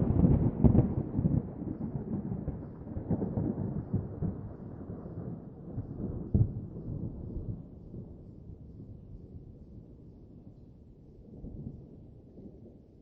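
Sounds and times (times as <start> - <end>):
crackling thunder claps: 0.0 - 7.8
thunder rolling and rumbling: 0.0 - 8.2.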